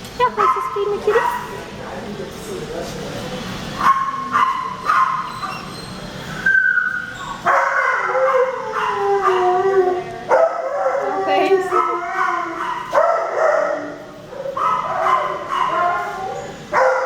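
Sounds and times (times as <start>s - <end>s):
dogs barking and yipping: 0.2s - 1.6s, 3.8s - 17.0s
dog long drawn-out cry: 7.4s - 17.0s.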